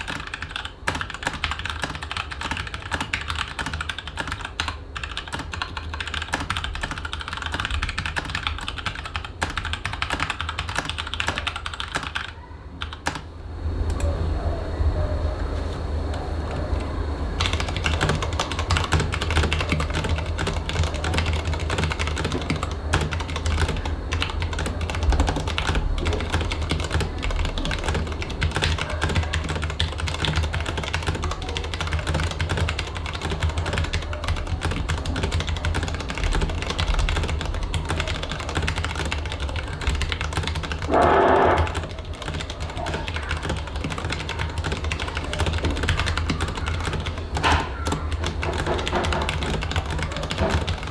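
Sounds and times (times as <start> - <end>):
typing on mechanical keyboard: 0.0 - 13.3, 16.5 - 50.9
loud pitched sound: 40.9 - 41.9.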